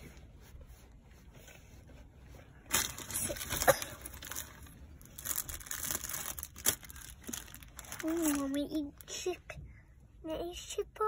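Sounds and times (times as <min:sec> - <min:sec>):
wrapping crackling and crunching: 0:02.7 - 0:09.2.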